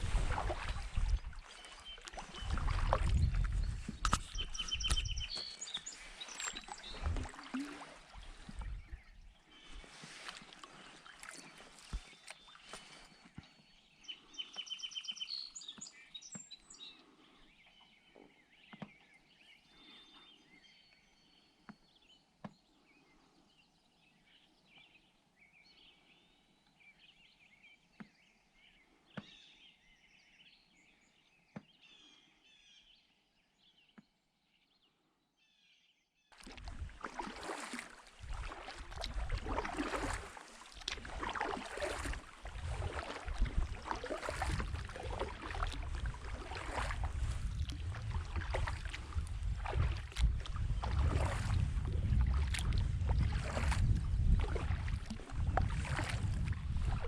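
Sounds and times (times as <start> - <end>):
birds chirping: 0.3 - 23.2, 36.4 - 51.6.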